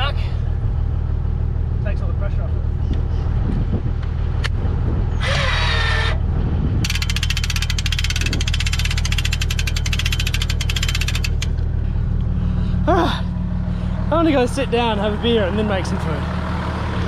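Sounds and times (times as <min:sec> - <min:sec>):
car engine idling: 0:06.2 - 0:17.0
high ticking rattle: 0:06.8 - 0:12.3.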